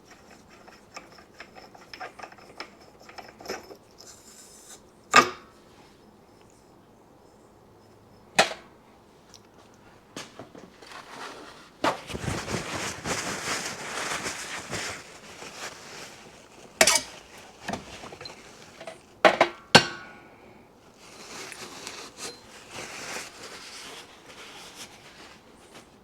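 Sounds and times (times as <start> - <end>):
rustling and scraping: 7.8 - 19.2, 20.9 - 26.0
metal parts clanking: 16.8 - 17.2.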